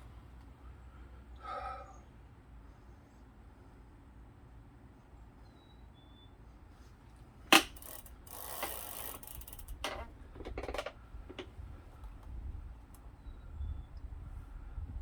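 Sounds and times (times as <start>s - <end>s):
sharp metal clack: 7.5s - 8.8s
tool ratcheting and scraping: 7.5s - 11.5s.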